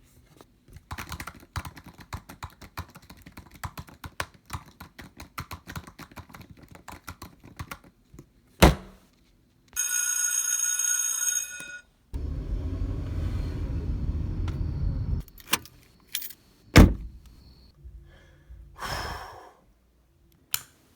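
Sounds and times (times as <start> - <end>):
loud thump: 12.2 - 15.2, 16.8 - 17.2
low rumble: 12.2 - 15.2.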